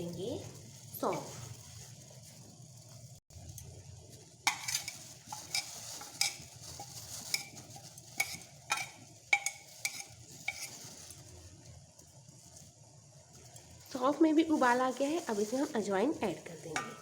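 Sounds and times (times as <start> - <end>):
water boiling: 0.0 - 17.0
metal spoon clinking on saucepan: 7.2 - 10.8, 16.8 - 17.0.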